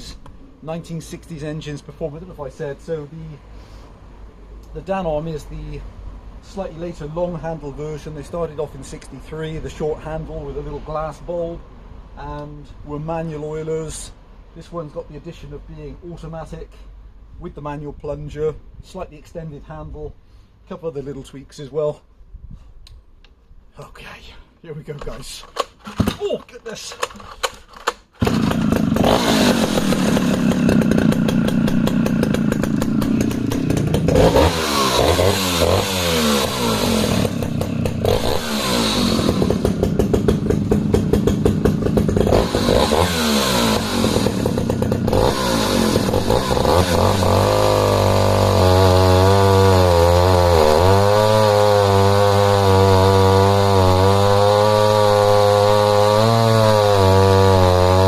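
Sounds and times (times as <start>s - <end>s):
chainsaw cutting through log: 28.2s - 58.0s.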